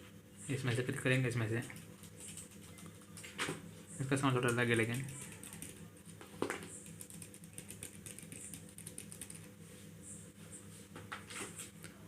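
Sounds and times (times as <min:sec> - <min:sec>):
keyboard keys clicking: 0:06.7 - 0:09.5.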